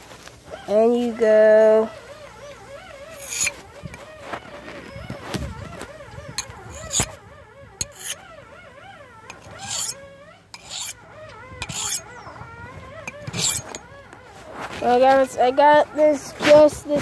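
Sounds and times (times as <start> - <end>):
knife rasping on sharpening stone: 3.1 - 3.6, 6.3 - 7.1, 7.8 - 8.2, 9.3 - 11.0, 11.6 - 12.1, 13.0 - 13.8.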